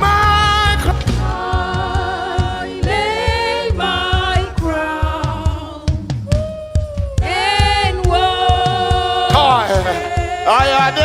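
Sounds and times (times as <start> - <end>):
group singing gospel song: 0.0 - 11.0.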